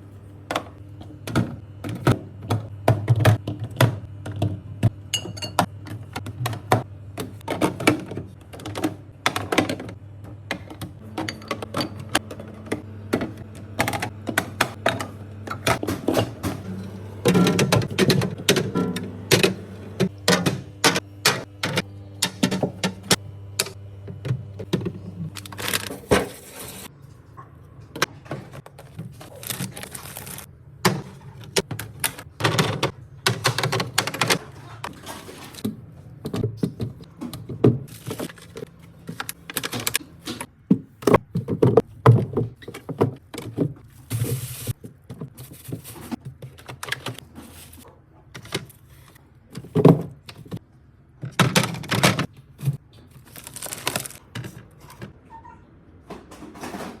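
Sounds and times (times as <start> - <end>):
low steady hum: 0.0 - 40.4
containers set onto fridge shelves: 0.4 - 26.9, 27.9 - 50.6, 51.2 - 57.0.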